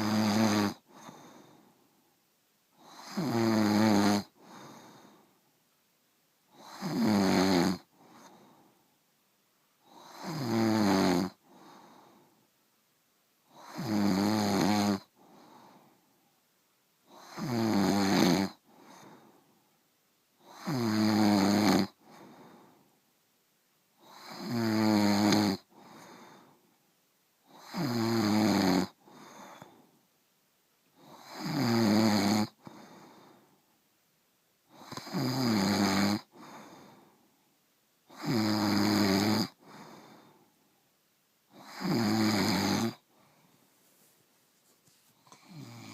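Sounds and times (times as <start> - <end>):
loud pitched snoring: 0.0 - 1.1, 2.8 - 4.4, 6.5 - 7.9, 9.9 - 11.4, 13.5 - 15.1, 17.1 - 18.6, 20.4 - 22.0, 24.0 - 25.7, 27.5 - 29.0, 31.0 - 32.6, 34.7 - 36.6, 38.1 - 39.9, 41.5 - 43.0, 45.3 - 45.9
faint breath: 0.8 - 2.9, 4.4 - 5.6, 7.9 - 9.1, 11.4 - 12.6, 15.1 - 16.5, 18.6 - 19.9, 21.9 - 23.1, 25.7 - 26.9, 29.0 - 30.1, 32.6 - 33.8, 36.3 - 37.6, 39.6 - 40.9, 43.0 - 45.8.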